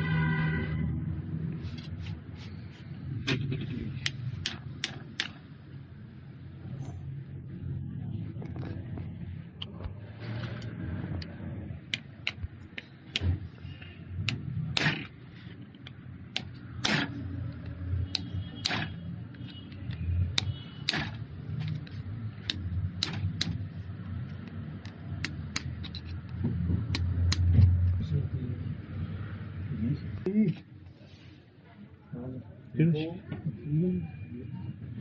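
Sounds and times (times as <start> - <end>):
hard objects clicking and knocking: 3.2 - 5.5, 11.9 - 23.7, 24.3 - 27.8.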